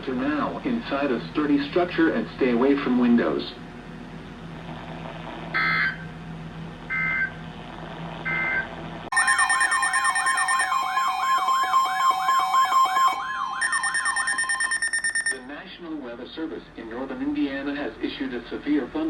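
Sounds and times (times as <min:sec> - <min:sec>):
digital data tone bursts: 0:08.3 - 0:15.5
warbling siren-like alert tone: 0:08.3 - 0:15.5
steady tone: 0:09.1 - 0:15.5.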